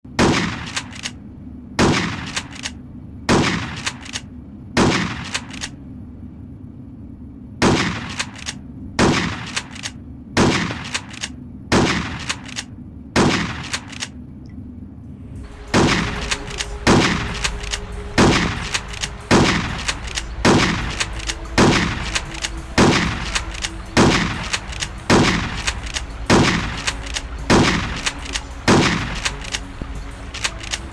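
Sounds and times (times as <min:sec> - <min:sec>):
steady low hum: 0:00.0 - 0:30.9
shotgun firing: 0:00.2 - 0:01.1, 0:01.8 - 0:02.7, 0:03.3 - 0:04.2, 0:04.8 - 0:05.7, 0:07.6 - 0:09.8, 0:10.4 - 0:12.6, 0:13.2 - 0:14.0, 0:15.7 - 0:22.2, 0:22.8 - 0:29.6.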